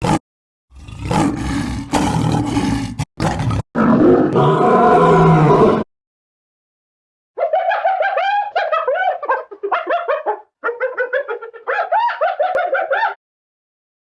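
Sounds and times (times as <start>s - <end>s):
big cat roaring: 0.0s - 5.9s.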